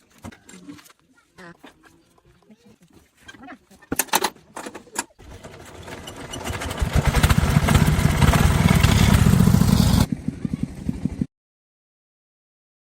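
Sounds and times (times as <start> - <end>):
small engine pulsing: 5.2 - 11.3.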